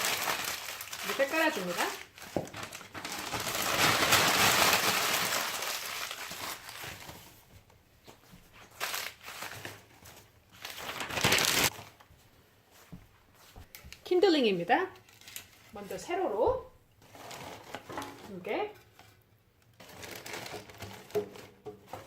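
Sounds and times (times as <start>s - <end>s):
newspaper crinkling and rustling: 0.0s - 12.2s, 14.9s - 16.1s, 17.0s - 18.2s, 19.8s - 22.0s.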